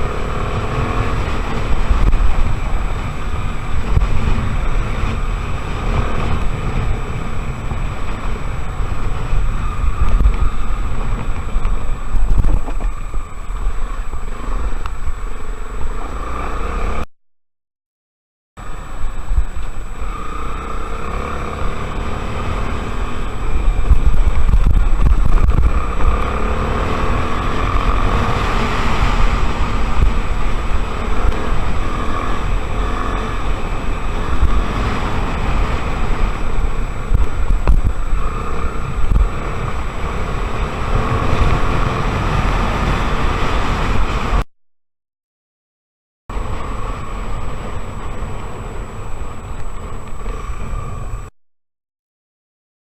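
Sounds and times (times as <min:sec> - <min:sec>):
wind buffeting microphone: 0:00.0 - 0:16.8, 0:21.0 - 0:44.4
motorcycle engine running: 0:00.0 - 0:17.1, 0:18.6 - 0:44.5, 0:46.3 - 0:51.3.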